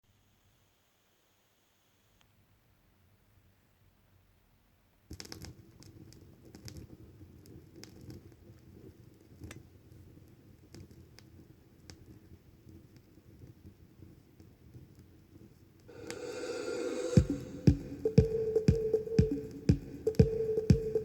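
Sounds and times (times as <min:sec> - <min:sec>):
crackles and pops: 0:05.1 - 0:16.2.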